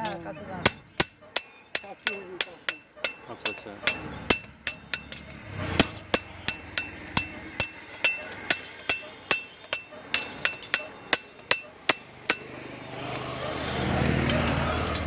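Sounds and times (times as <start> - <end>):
hammer striking steel on anvil: 0.0 - 13.3.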